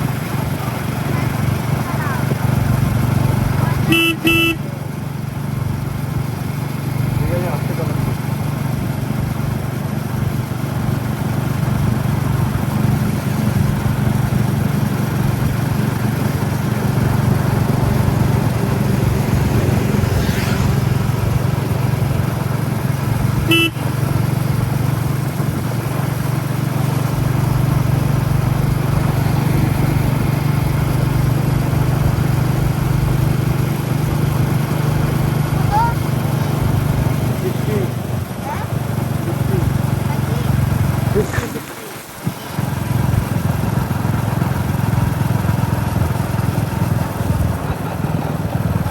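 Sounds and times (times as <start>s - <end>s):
horn toot: 3.8s - 4.8s, 23.4s - 24.1s.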